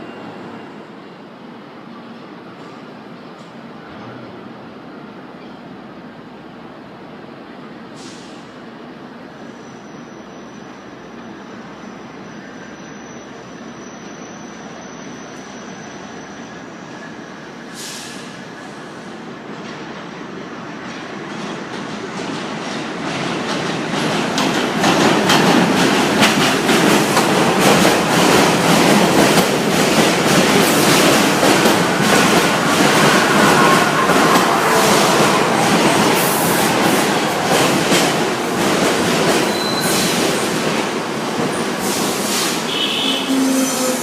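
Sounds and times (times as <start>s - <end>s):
subway train passing: 0.0s - 44.0s
faint wheel squeal: 39.5s - 40.2s.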